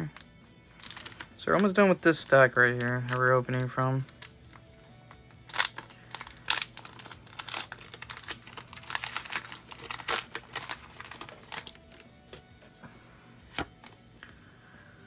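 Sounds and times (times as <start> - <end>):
foil wrapper crinkling and tearing: 0.1 - 4.8, 5.4 - 12.4.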